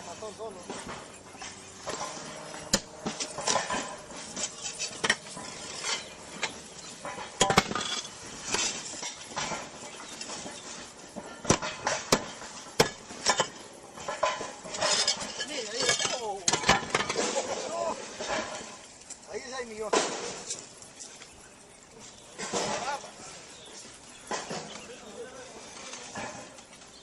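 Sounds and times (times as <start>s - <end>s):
roof tiles knocking together: 0.6s - 18.9s.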